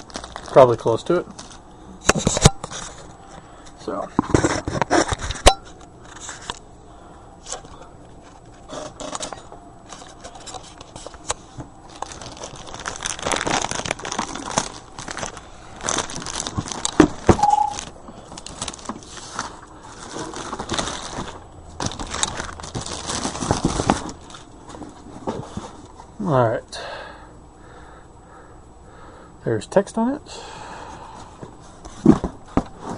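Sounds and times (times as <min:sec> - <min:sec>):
plastic packaging crinkling: 0:00.0 - 0:03.1, 0:08.2 - 0:25.9
short high squeak: 0:17.4 - 0:17.8.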